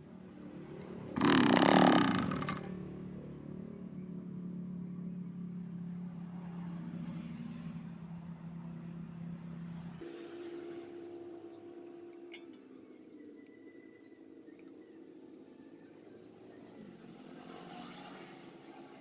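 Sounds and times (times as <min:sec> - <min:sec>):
small two-stroke engine running: 0:00.9 - 0:03.3
high steady hum: 0:10.0 - 0:17.0.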